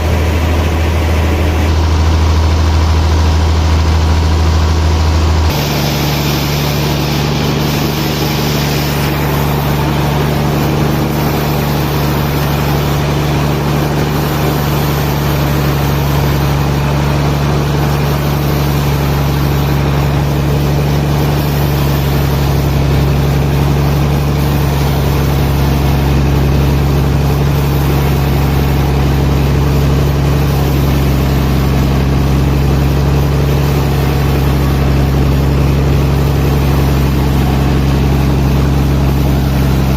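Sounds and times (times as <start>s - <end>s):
machine engine droning: 0.0s - 39.9s.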